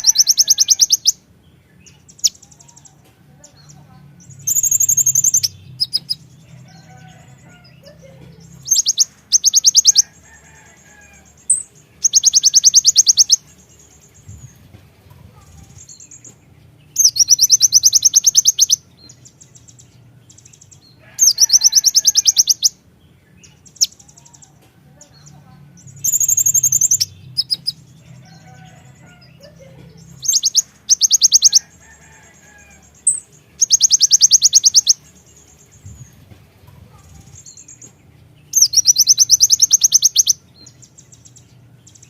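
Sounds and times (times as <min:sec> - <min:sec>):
bird singing fast high trills: 0:00.0 - 0:02.9, 0:04.2 - 0:14.6, 0:16.9 - 0:22.8, 0:25.8 - 0:29.4, 0:30.0 - 0:36.2, 0:38.5 - 0:42.0
other birds chirping: 0:00.0 - 0:42.0.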